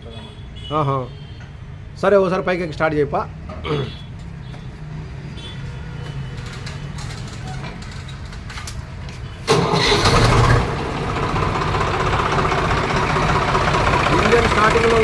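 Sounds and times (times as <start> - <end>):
tractor diesel engine starting: 9.5 - 15.0.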